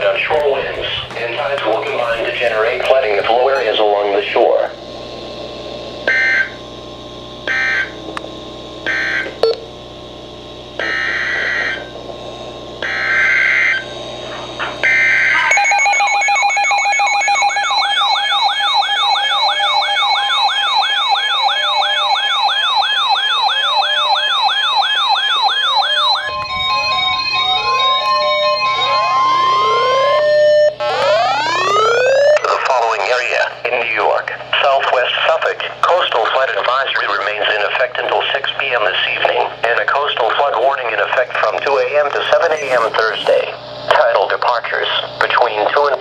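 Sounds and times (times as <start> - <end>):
harsh buzzing data bursts: 0.0 - 46.0
warbling alert tone: 15.2 - 32.9.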